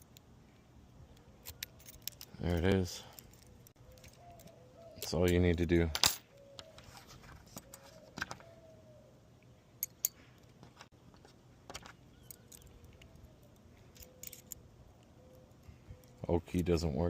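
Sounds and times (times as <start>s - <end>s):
keys jangling on a ring: 1.4s - 6.2s, 13.8s - 14.6s.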